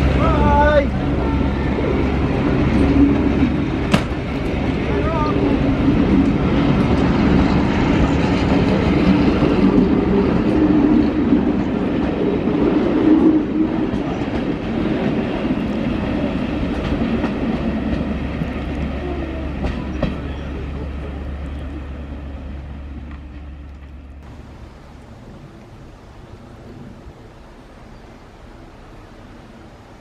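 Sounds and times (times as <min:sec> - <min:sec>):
locomotive engine running: 0:00.0 - 0:13.2, 0:13.8 - 0:30.0
train wheels clacking on rails: 0:01.8 - 0:21.8.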